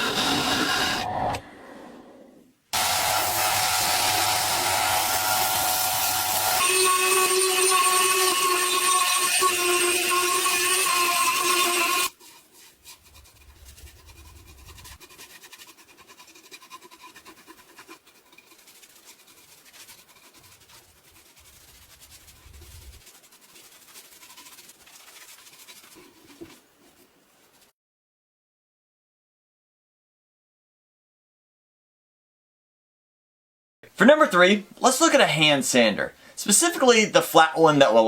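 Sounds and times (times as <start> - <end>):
power tool whining: 2.8 - 12.1
rubbing sounds: 10.1 - 27.7.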